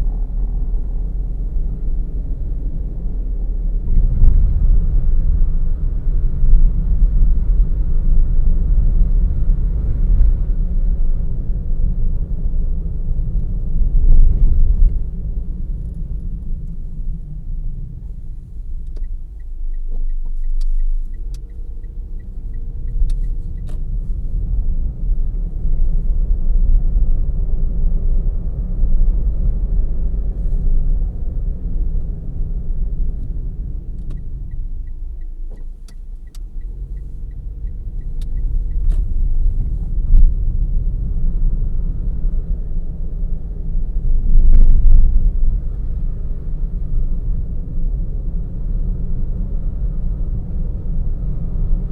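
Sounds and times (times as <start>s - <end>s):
turn signal ticking: 0.0s - 27.3s, 29.4s - 42.6s
car engine and road noise: 0.0s - 51.9s.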